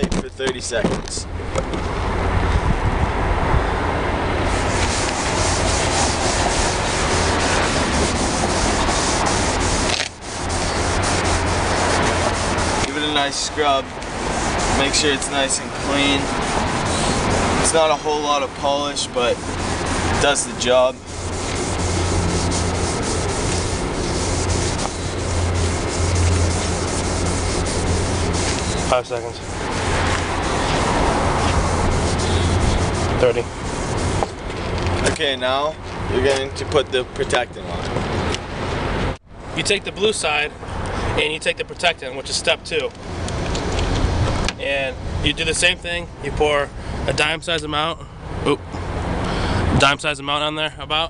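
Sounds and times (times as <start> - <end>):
sponge scrubbing plastic: 4.5 - 34.4.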